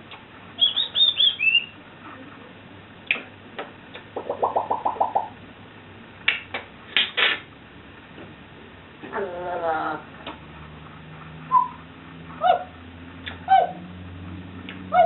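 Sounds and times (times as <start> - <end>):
parrot whistles: 0.6 - 1.7, 11.5 - 11.8
parrot stuttering notes: 4.1 - 5.4.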